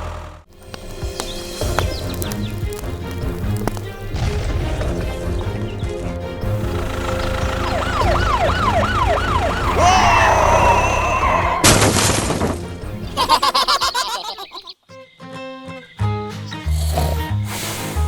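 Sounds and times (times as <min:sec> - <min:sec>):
background music: 0:00.4 - 0:14.2, 0:14.9 - 0:18.0
police siren wailing: 0:06.6 - 0:11.7.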